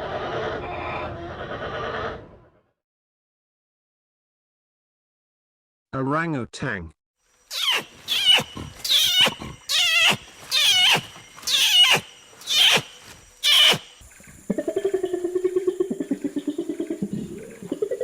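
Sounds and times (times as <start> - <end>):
orangutan squealing calls: 7.5 - 14.0.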